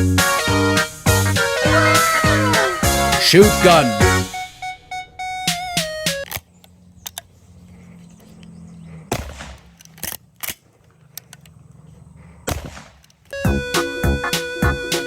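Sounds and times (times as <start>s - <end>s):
sharp clicks: 6.1s - 7.3s, 9.2s - 11.8s
shotgun firing: 9.1s - 9.8s, 12.5s - 13.1s.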